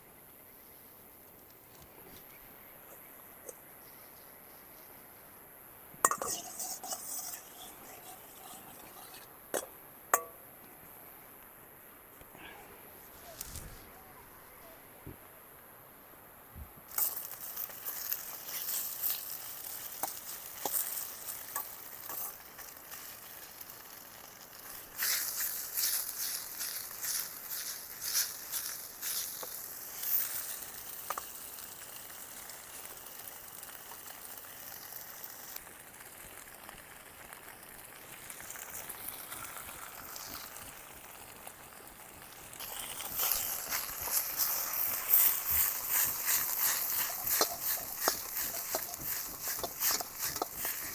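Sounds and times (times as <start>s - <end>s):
food sizzling in a pan: 6.0s - 10.3s, 16.9s - 50.9s.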